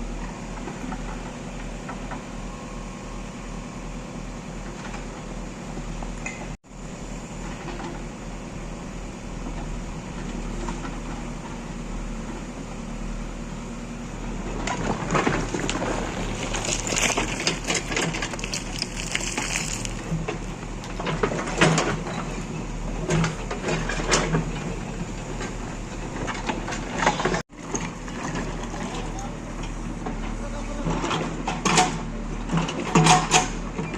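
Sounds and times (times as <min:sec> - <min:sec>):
diesel engine running: 0:00.0 - 0:33.9
bucket crunching and scraping: 0:14.3 - 0:20.5.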